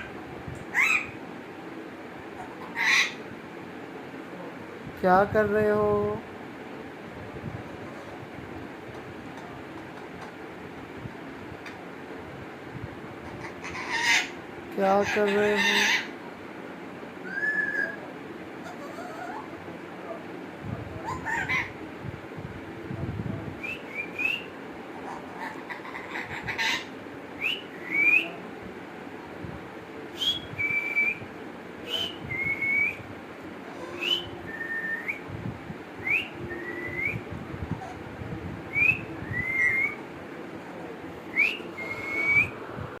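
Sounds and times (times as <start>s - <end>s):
two-note whistles: 31.9s - 33.0s.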